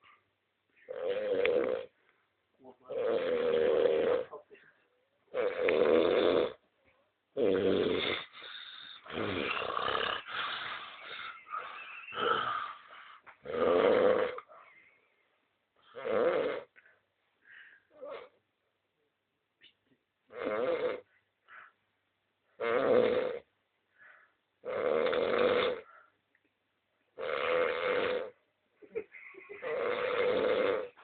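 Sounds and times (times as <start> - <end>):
loud rasping snores: 0.9 - 2.0, 2.9 - 4.4, 5.3 - 6.6, 7.4 - 14.5, 15.9 - 16.8, 20.3 - 21.1, 22.6 - 23.5, 24.6 - 25.9, 27.2 - 28.4, 29.6 - 31.0
quick uneven breathing: 8.0 - 13.4.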